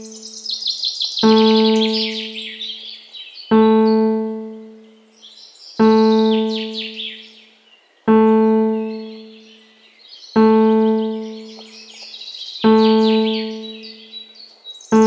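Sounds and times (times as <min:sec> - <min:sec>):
low piano note ringing: 0:00.0 - 0:00.3, 0:01.2 - 0:02.6, 0:03.5 - 0:04.9, 0:05.8 - 0:07.0, 0:08.1 - 0:09.4, 0:10.4 - 0:11.7, 0:12.7 - 0:14.0
birds chirping: 0:00.0 - 0:15.0.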